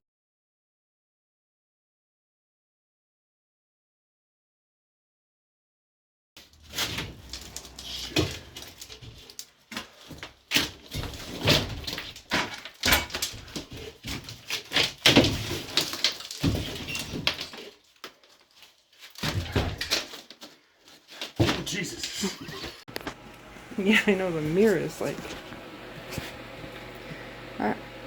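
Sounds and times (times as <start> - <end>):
scraping: 6.4 - 23.0
demolition knocks and thumps: 6.5 - 17.8, 19.0 - 20.4, 21.1 - 22.8.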